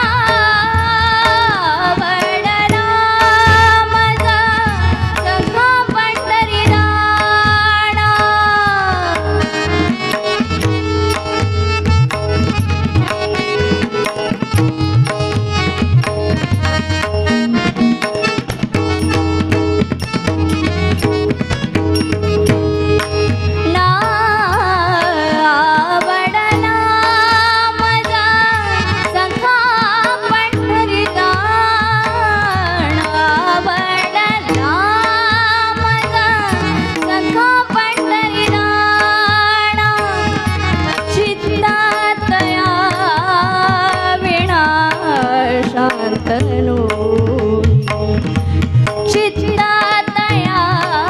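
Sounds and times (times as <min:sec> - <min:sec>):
woman singing: 0:00.0 - 0:11.1, 0:23.6 - 0:51.0
tabla: 0:00.0 - 0:51.0.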